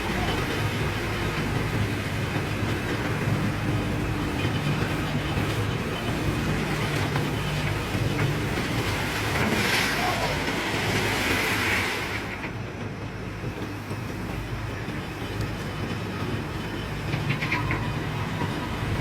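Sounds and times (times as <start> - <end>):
heavy machinery droning: 0.0 - 12.7
hiss: 8.8 - 12.4.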